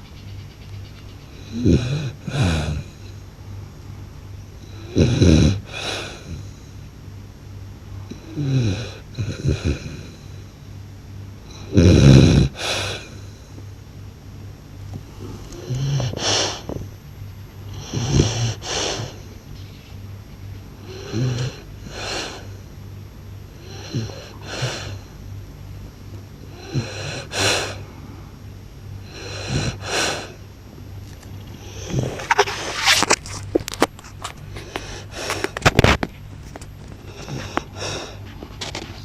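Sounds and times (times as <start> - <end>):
dog snoring: 1.3 - 3.2, 4.6 - 6.7, 8.0 - 10.4, 11.5 - 13.4, 15.0 - 16.9, 17.7 - 19.3, 20.8 - 22.6, 23.6 - 25.2, 26.5 - 27.9, 29.0 - 30.4, 31.4 - 33.9, 36.9 - 39.0.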